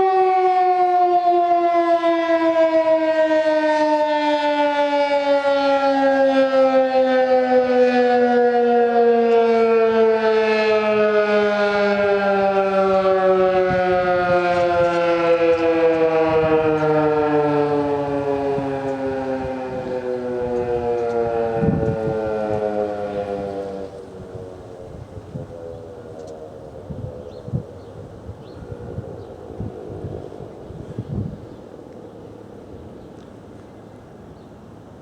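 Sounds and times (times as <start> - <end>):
siren winding down: 0.0 - 27.6.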